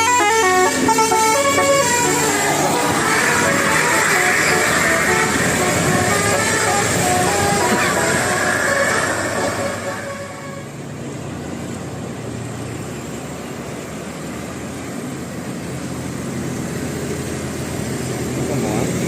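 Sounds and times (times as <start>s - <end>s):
horn-like tones: 0.0s - 10.8s
bus engine running: 0.0s - 19.0s
road noise: 0.0s - 19.0s.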